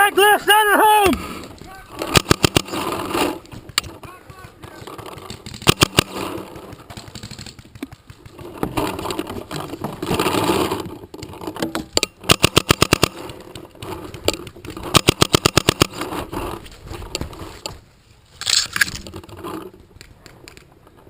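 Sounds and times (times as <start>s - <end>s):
paintball marker firing: 2.0s - 8.7s, 11.9s - 13.5s, 14.1s - 16.0s.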